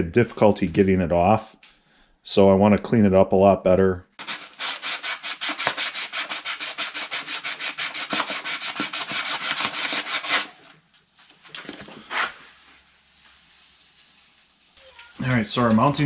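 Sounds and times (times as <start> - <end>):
hand scrubbing on metal: 4.2 - 10.6.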